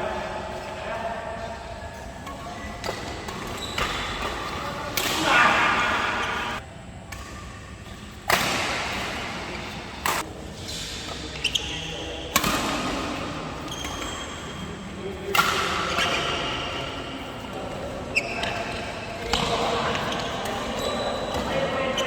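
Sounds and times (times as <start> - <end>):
rackets hitting shuttlecock: 2.2 - 11.2, 12.3 - 16.8.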